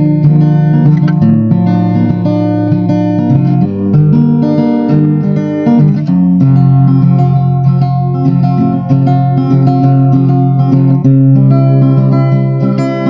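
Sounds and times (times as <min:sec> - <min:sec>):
plucked guitar melody: 0:00.0 - 0:13.0.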